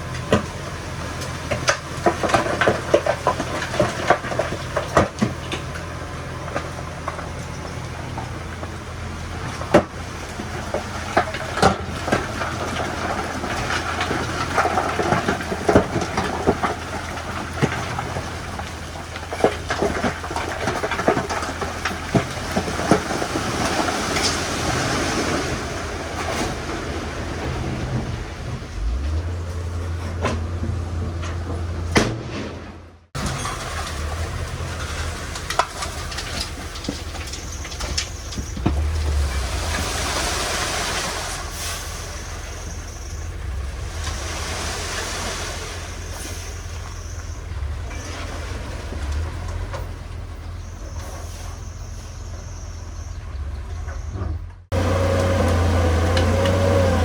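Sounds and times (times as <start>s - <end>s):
bulldozer diesel engine running: 0.0s - 57.0s
steel tracks clanking: 0.0s - 57.0s.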